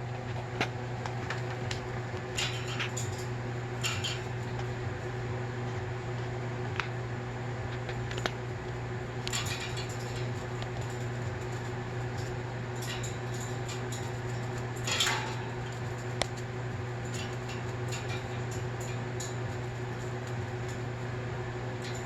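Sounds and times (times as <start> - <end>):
low electrical hum: 0.0 - 22.0.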